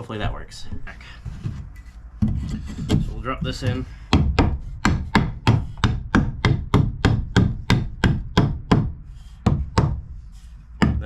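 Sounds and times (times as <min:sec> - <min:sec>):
hammer striking wood: 0:02.2 - 0:10.0, 0:10.8 - 0:11.0.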